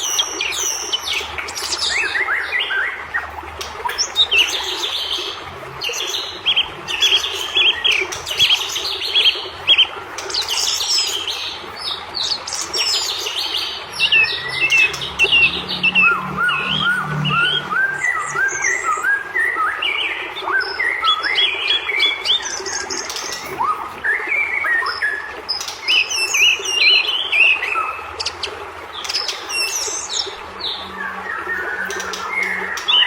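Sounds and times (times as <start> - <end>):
bird singing chirps and whistles: 0.0 - 3.0, 12.2 - 33.0.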